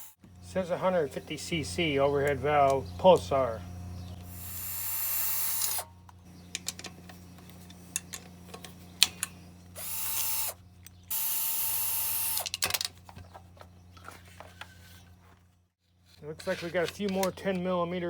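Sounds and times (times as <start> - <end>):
power drill spinning out bolts: 4.1 - 15.2.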